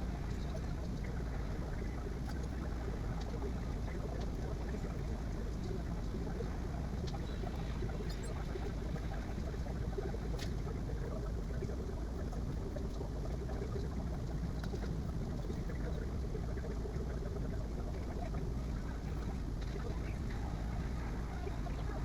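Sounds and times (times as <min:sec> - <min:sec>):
faint ticks: 0:00.0 - 0:22.0.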